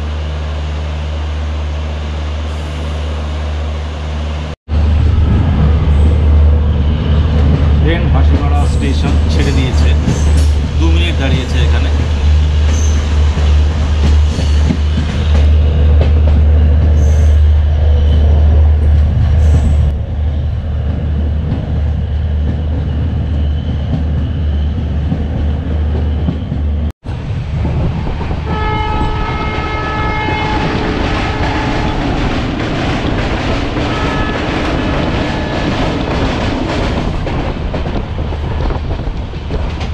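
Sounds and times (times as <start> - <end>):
train rumbling on track: 0.0 - 39.9
train horn: 28.4 - 32.2, 33.8 - 35.8.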